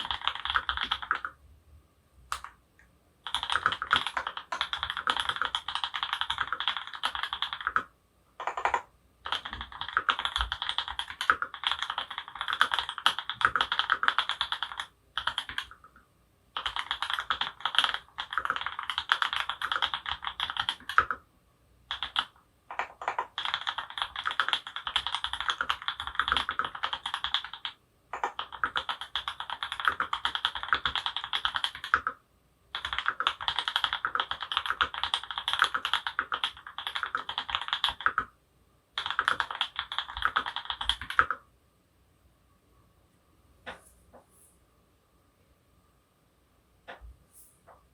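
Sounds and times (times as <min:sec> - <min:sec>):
mechanical keyboard typing: 0:00.0 - 0:01.4, 0:03.2 - 0:16.0, 0:16.6 - 0:21.2, 0:21.9 - 0:38.3, 0:39.0 - 0:41.4.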